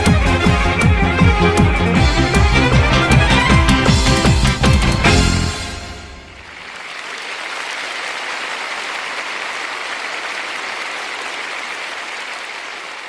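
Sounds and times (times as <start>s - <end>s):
large audience applauding: 1.9s - 13.0s.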